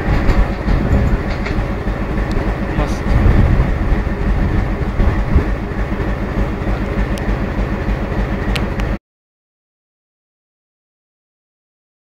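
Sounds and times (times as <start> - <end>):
train rumbling past: 0.0 - 9.0
wheels clattering over rail joints: 0.0 - 9.0.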